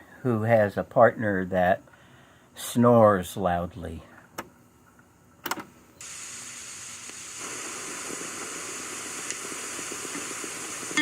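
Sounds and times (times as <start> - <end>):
steady hiss: 6.0 - 11.0.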